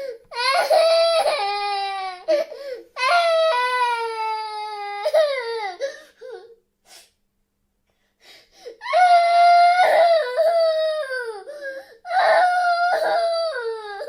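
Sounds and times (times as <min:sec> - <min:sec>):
girl crying: 0:00.0 - 0:06.6, 0:08.6 - 0:14.0.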